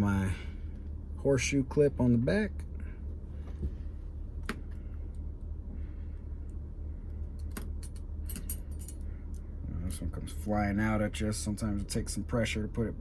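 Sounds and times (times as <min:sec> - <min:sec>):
steady low hum: 0:00.0 - 0:13.0
small metallic clicks: 0:07.4 - 0:09.4.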